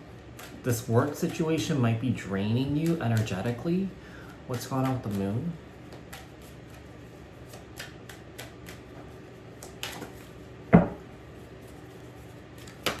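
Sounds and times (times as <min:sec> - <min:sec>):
cards clicking and snapping: 0:02.4 - 0:03.8, 0:04.5 - 0:06.8, 0:07.4 - 0:10.3, 0:12.6 - 0:13.0
thump on table: 0:10.8 - 0:11.0.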